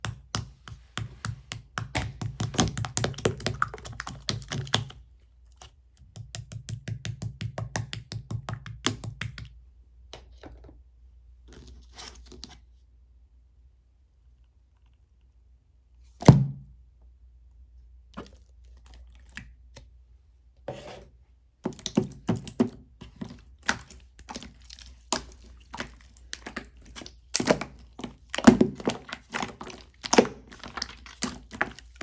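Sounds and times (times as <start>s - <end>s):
slime squishing pops and squelches: 0.0s - 5.0s, 21.7s - 32.0s.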